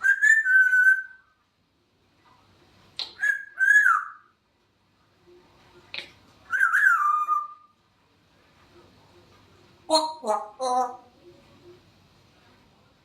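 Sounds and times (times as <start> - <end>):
parrot whistled calls: 0.0 - 1.3, 3.2 - 4.3, 6.5 - 7.7.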